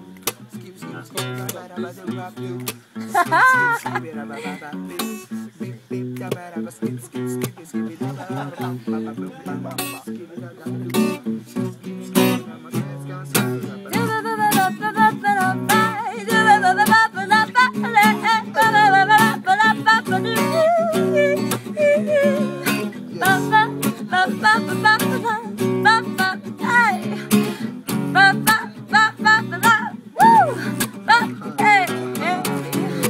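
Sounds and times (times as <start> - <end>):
acoustic guitar strumming: 0.0 - 33.0
person singing wordlessly: 0.2 - 33.0.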